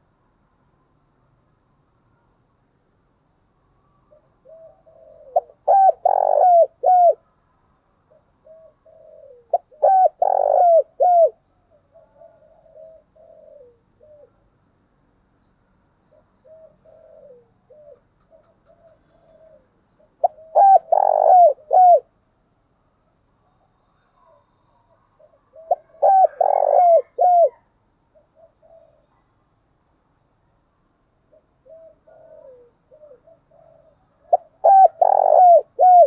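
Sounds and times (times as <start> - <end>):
doves cooing: 4.1 - 7.2, 8.1 - 14.4, 16.1 - 22.1, 24.0 - 29.3, 31.3 - 36.0.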